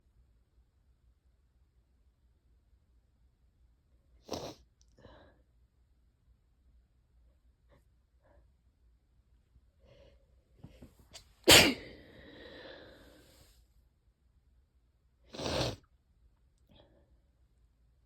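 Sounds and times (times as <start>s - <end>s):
person sneezing: 11.2s - 12.1s.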